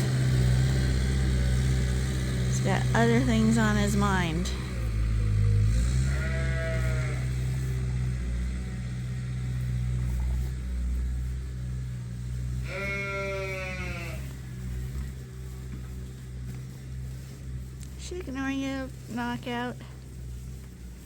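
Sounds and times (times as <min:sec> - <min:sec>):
steady low hum: 0:00.0 - 0:21.0
sheep bleating: 0:05.9 - 0:07.9, 0:12.6 - 0:14.5.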